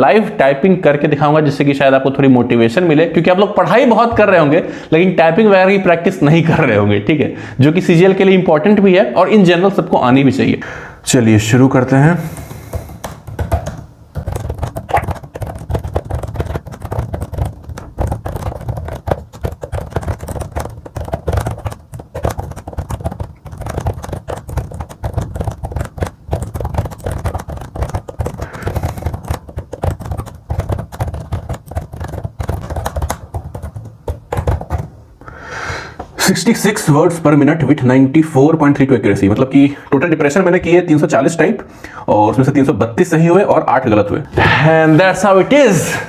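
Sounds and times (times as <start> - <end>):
fast keyboard typing: 12.2 - 35.0.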